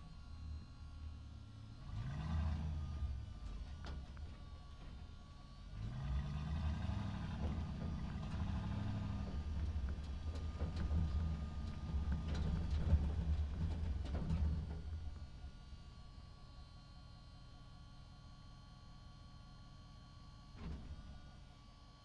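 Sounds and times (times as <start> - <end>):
truck engine rumble: 0.0 - 17.7
knocks and rattles: 7.3 - 15.2.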